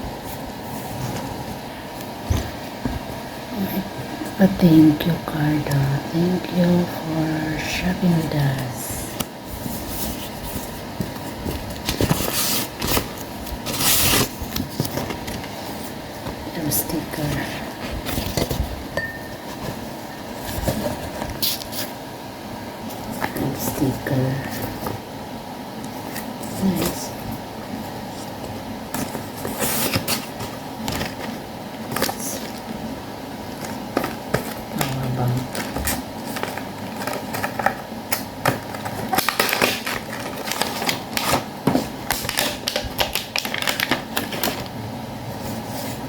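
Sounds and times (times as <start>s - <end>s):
low room hum: 0.0s - 46.0s
packaging rustling and scraping: 9.1s - 22.0s, 25.8s - 46.0s.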